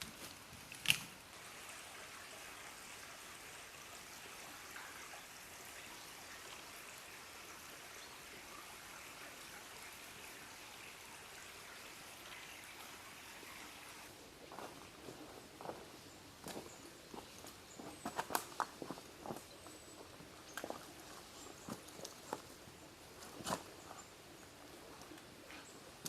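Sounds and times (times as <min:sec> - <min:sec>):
river water flowing: 0:01.1 - 0:17.9.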